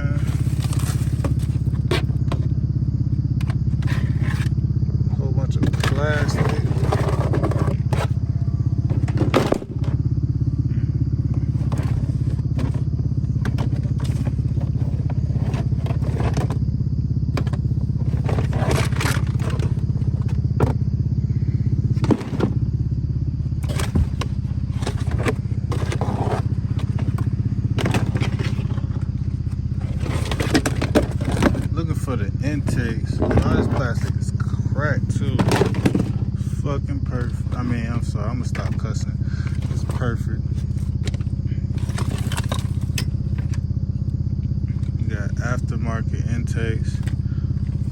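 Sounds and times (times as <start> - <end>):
car engine idling: 0.0 - 47.9
plastic parts clattering: 5.6 - 8.1, 24.8 - 27.2, 29.8 - 31.7, 32.6 - 34.1, 35.3 - 36.2, 41.8 - 43.6.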